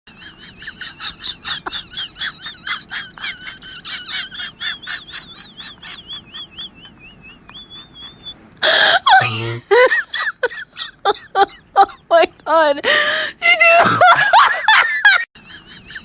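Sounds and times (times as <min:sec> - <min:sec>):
high-pitched chirping calls: 0:04.3 - 0:08.4.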